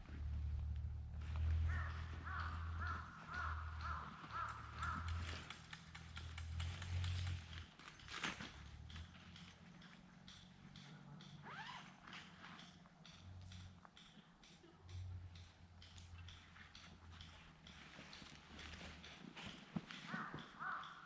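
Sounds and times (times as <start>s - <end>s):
low rumble: 0.0s - 4.2s.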